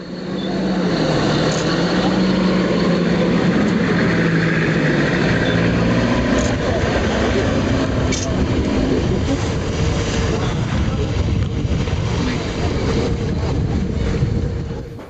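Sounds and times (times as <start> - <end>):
engine-like hum: 0.0 - 15.0.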